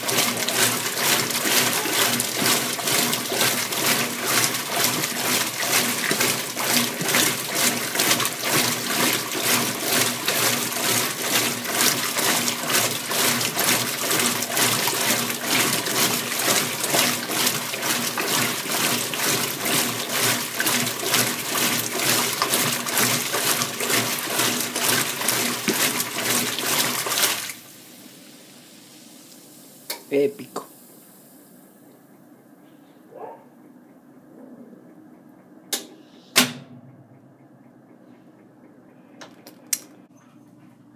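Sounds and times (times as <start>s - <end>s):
washing machine agitating water: 0.0s - 31.8s.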